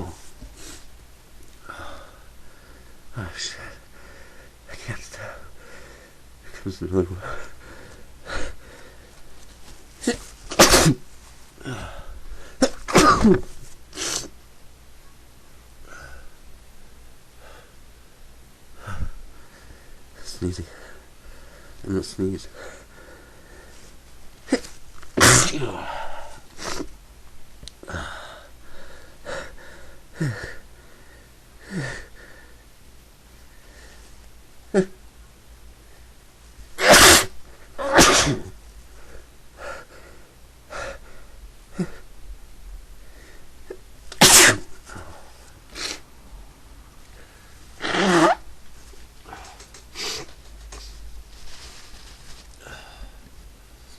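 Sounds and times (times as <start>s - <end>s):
faint breathing: 1.6s - 9.2s, 18.7s - 21.8s, 22.4s - 24.0s, 27.8s - 32.7s, 33.4s - 34.2s, 38.9s - 42.1s, 43.0s - 43.6s, 49.2s - 53.3s
person sneezing: 10.0s - 12.0s, 12.6s - 14.4s, 24.4s - 26.9s, 34.7s - 35.0s, 36.8s - 38.6s, 44.1s - 46.1s, 47.8s - 48.4s, 49.3s - 50.4s.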